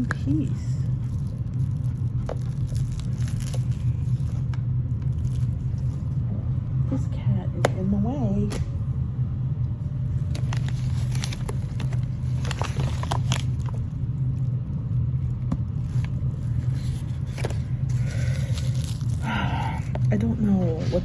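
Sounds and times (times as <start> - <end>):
cardboard packaging crinkling: 0.0 - 6.2, 10.0 - 20.1.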